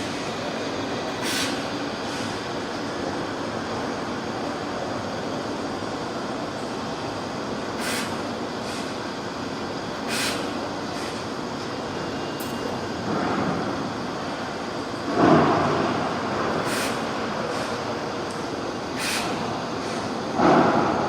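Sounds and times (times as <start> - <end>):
laser cutting machine running: 0.0 - 21.0
short hisses: 7.8 - 8.9, 16.6 - 17.0, 19.0 - 19.4.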